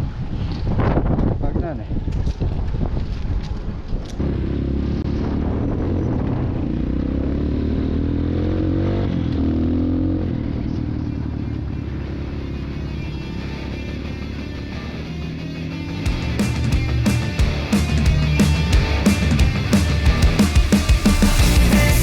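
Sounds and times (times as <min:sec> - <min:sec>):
small vehicle engine accelerating: 0:04.2 - 0:16.0.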